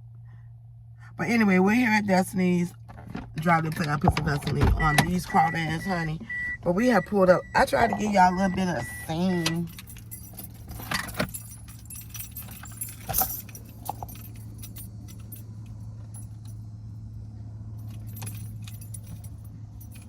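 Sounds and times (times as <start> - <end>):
car engine idling: 0.1 - 20.0
keys jingling: 4.2 - 16.8, 17.7 - 20.0.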